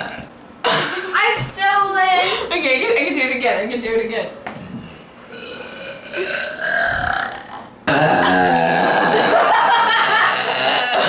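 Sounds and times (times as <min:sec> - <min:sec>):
girl belching: 0:00.0 - 0:01.0, 0:04.6 - 0:11.0.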